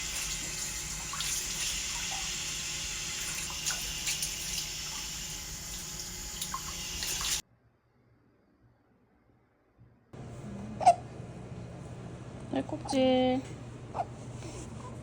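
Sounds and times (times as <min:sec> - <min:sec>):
tap water running into sink: 0:00.0 - 0:07.4
water splashing: 0:00.0 - 0:07.4.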